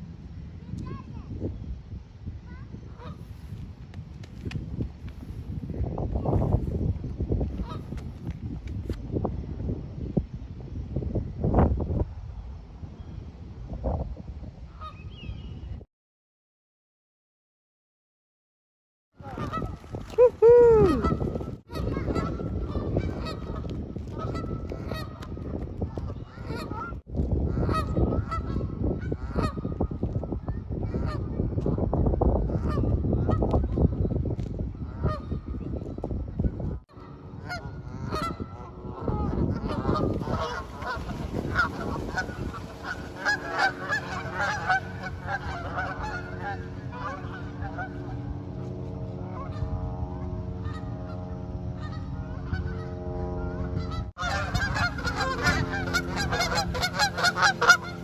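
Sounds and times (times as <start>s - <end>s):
geese honking: 37.3s - 48.2s, 50.6s - 58.0s.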